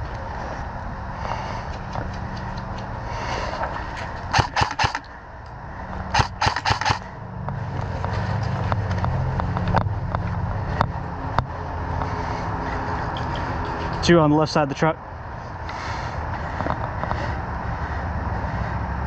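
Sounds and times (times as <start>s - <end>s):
airsoft gun shots: 4.3s - 5.1s, 6.1s - 7.0s.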